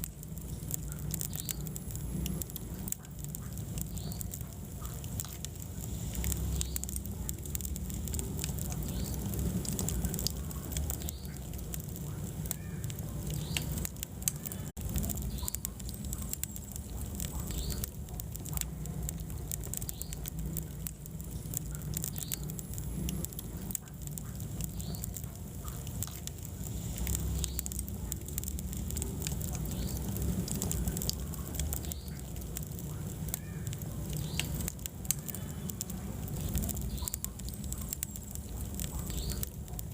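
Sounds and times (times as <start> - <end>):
fire crackles and pops: 0.0 - 39.9
fire flames rumbling: 0.0 - 39.9.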